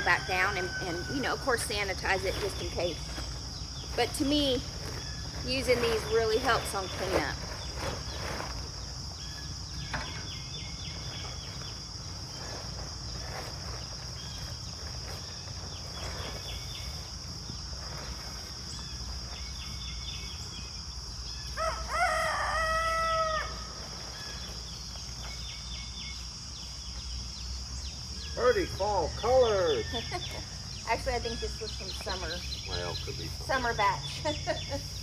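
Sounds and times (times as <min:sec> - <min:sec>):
rooster crowing: 0:00.0 - 0:01.4, 0:21.6 - 0:23.8.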